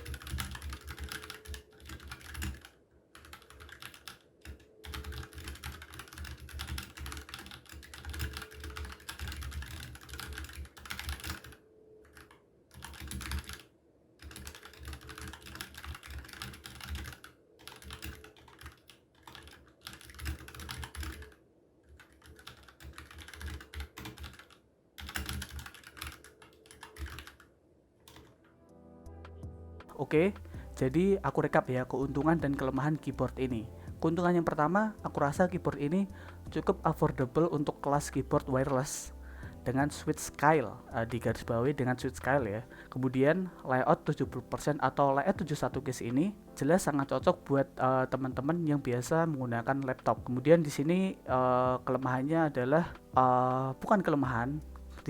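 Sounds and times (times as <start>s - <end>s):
mechanical keyboard typing: 0.0s - 28.4s, 29.9s - 55.0s.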